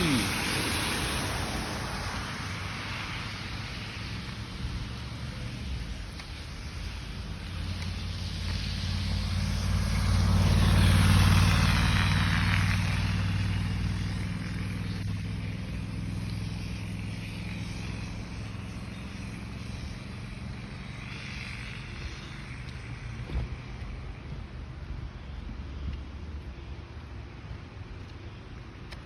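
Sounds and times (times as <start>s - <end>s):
motor vehicle passing by: 0.0s - 28.4s.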